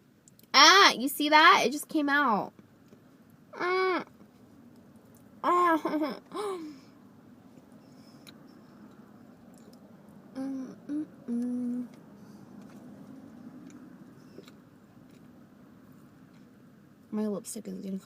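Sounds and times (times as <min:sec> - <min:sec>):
woman humming: 0:03.6 - 0:04.1, 0:05.4 - 0:06.8, 0:10.3 - 0:12.0.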